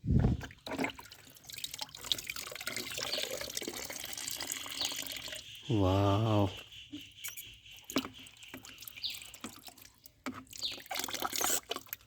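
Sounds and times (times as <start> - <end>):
water trickling from toy pump: 0.2 - 12.0
person saying wow: 5.7 - 6.6.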